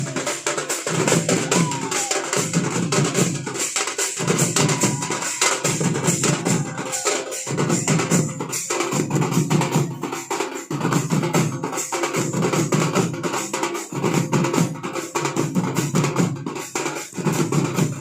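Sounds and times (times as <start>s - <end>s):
faint high wind instrument: 0.0s - 3.4s, 4.2s - 8.2s
drums beaten in fast rhythm: 0.0s - 18.0s.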